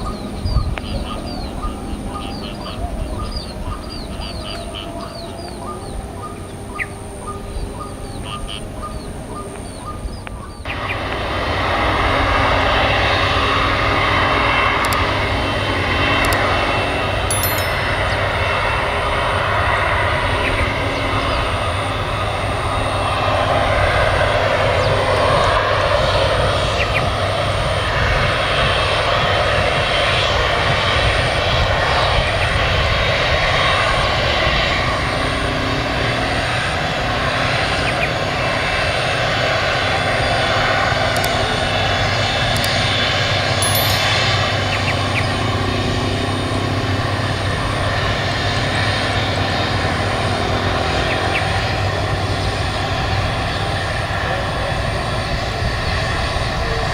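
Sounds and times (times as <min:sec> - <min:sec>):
airliner engines rumbling: 0:00.0 - 0:56.9.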